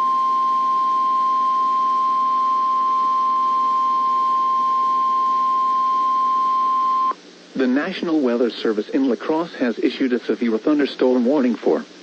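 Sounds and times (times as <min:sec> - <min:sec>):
steady high alarm tone: 0:00.0 - 0:07.2
radio hiss: 0:05.6 - 0:12.0.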